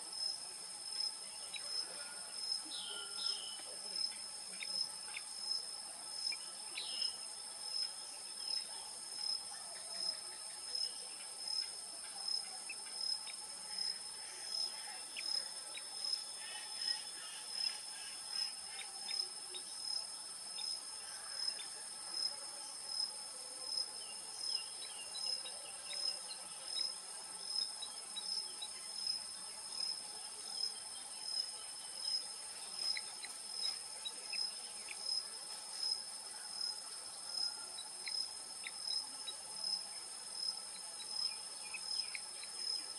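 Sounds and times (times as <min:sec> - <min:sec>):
insects chirping: 0:00.0 - 0:42.9.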